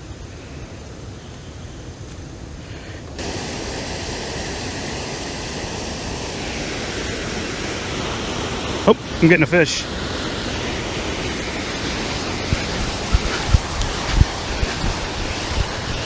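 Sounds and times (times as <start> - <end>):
flowing water rushing: 3.2 - 16.0.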